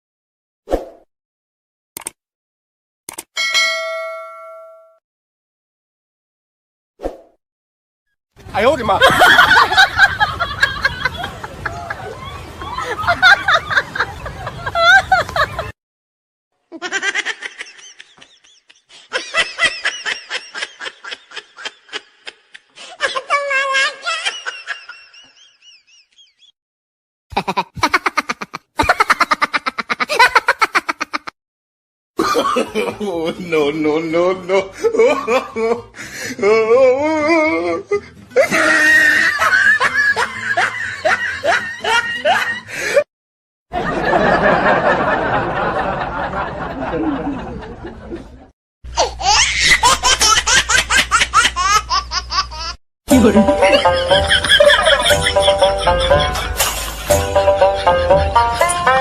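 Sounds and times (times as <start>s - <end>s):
person laughing: 9.0s - 12.1s, 16.7s - 25.3s, 27.3s - 31.3s, 32.2s - 43.0s, 49.0s - 59.0s
music with upward swoops: 53.1s - 59.0s.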